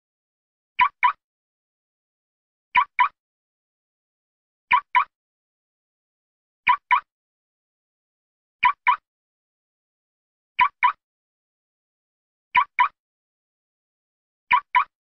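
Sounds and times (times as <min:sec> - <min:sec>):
car alarm double chirp: 0:04.7 - 0:05.1.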